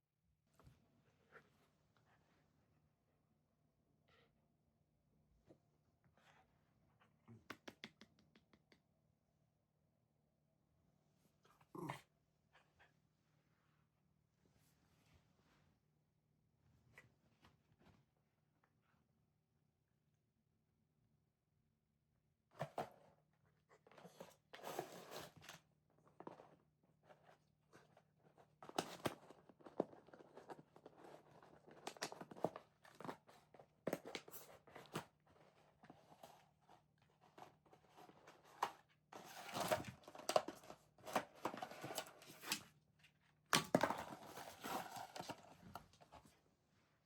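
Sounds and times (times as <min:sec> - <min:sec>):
rustling and crinkling: 0:24.6 - 0:46.4.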